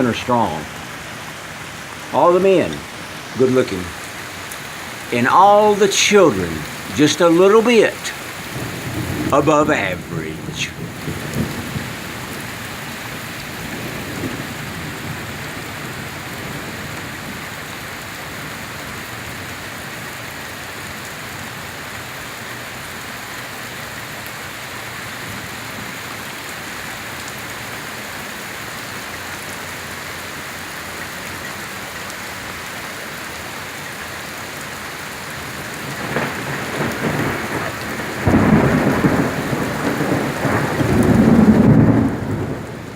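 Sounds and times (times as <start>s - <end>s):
steady rain falling: 0.0s - 42.9s
thunder rumbling: 2.2s - 17.4s, 35.7s - 42.9s.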